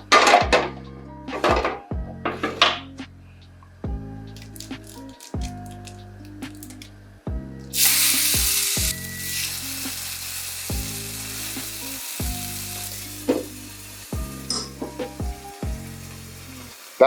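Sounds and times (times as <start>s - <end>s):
background music with beat: 0.0s - 17.0s
patties sizzling in hot oil: 4.3s - 6.8s, 7.7s - 17.0s.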